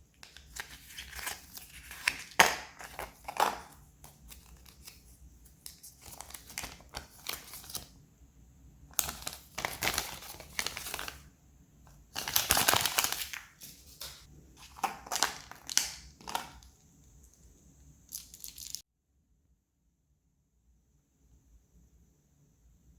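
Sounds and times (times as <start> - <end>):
foil wrapper crinkling and tearing: 0.2 - 7.9, 8.9 - 11.2, 12.1 - 16.7, 18.1 - 18.8.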